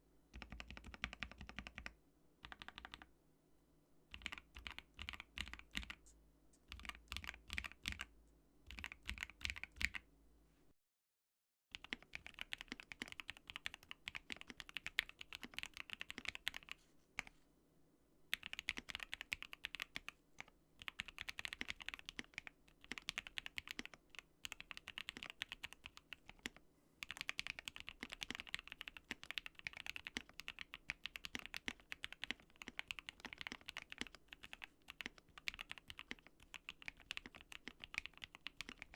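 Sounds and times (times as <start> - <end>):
mechanical keyboard typing: 0.4 - 3.1, 4.1 - 6.1, 6.7 - 8.1, 8.7 - 10.0, 11.7 - 16.8, 18.3 - 38.9.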